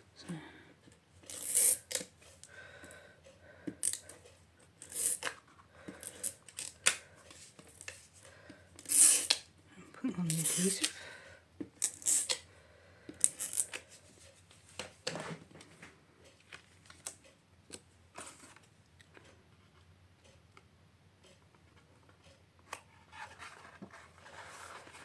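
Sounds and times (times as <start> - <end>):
scratchy rasps of adhesive: 8.8 - 9.4.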